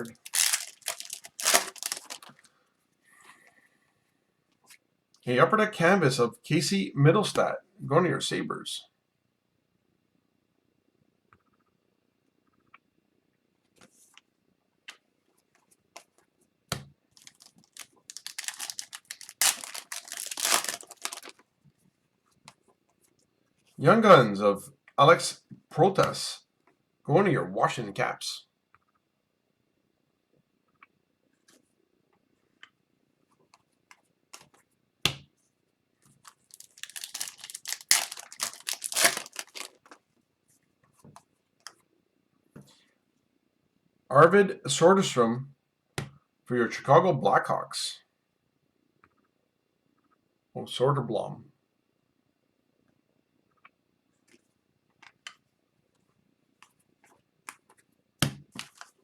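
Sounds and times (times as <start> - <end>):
card wrapper tearing and crinkling: 0.0 - 2.4, 17.2 - 21.4, 36.3 - 40.0.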